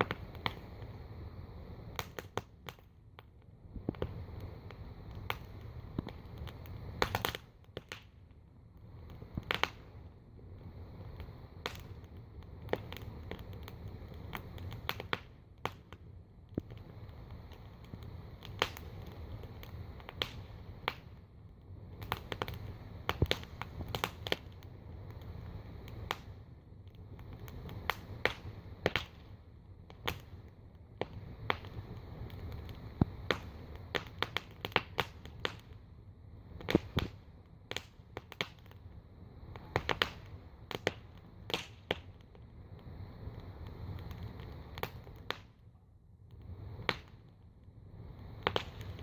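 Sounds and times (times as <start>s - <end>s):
campfire crackling and popping: 0.0s - 49.0s.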